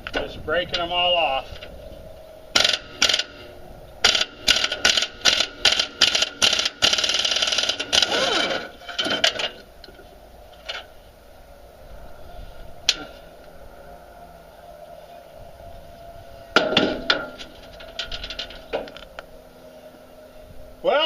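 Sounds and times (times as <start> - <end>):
pneumatic impact wrench bursts: 2.6 - 9.4.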